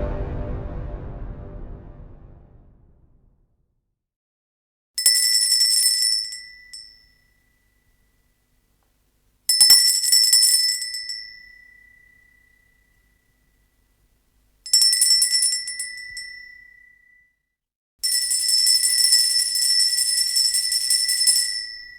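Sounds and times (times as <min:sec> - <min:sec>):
tiny bell ringing: 0:05.0 - 0:08.3, 0:09.5 - 0:13.8, 0:14.7 - 0:17.4, 0:18.0 - 0:21.9.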